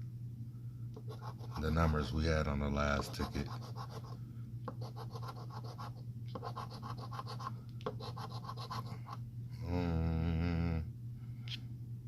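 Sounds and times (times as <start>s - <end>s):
scratch-off ticket being scratched: 1.1s - 1.8s, 2.9s - 4.2s, 4.8s - 9.0s.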